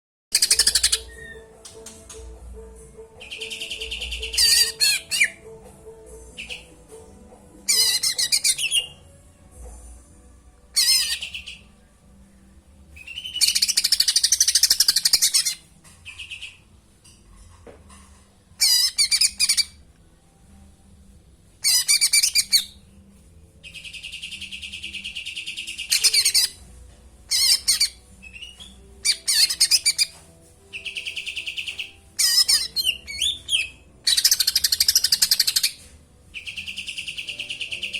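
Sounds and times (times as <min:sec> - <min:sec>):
songbird singing: 0:00.3 - 0:02.4, 0:03.0 - 0:05.6, 0:06.2 - 0:09.1, 0:10.8 - 0:11.9, 0:12.9 - 0:17.2, 0:21.6 - 0:26.7, 0:27.3 - 0:37.9
mimicked sparrow chirps: 0:03.2 - 0:05.4, 0:06.3 - 0:06.9, 0:23.6 - 0:26.6, 0:27.3 - 0:37.9.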